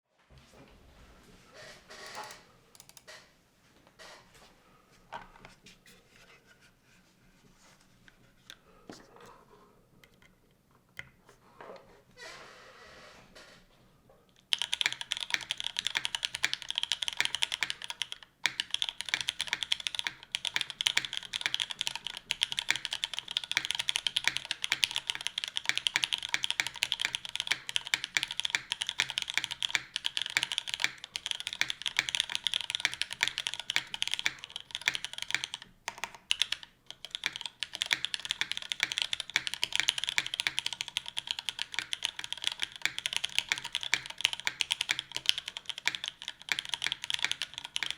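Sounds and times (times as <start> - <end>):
fast mechanical keyboard typing: 2.0 - 3.1, 14.4 - 47.9.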